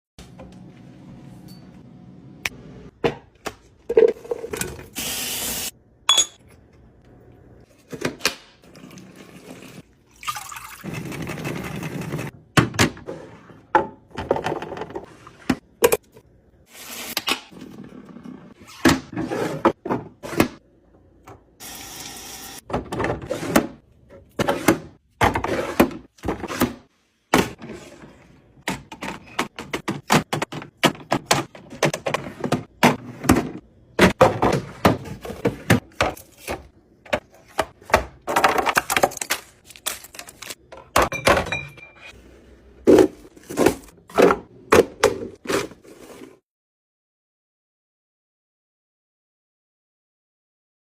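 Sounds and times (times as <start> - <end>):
liquid pouring: 8.7 - 10.8.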